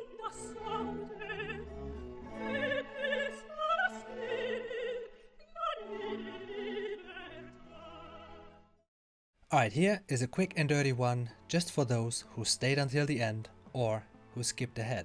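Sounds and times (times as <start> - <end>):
operatic voice singing: 0.0 - 8.5
string accompaniment: 0.0 - 8.8, 9.5 - 15.0.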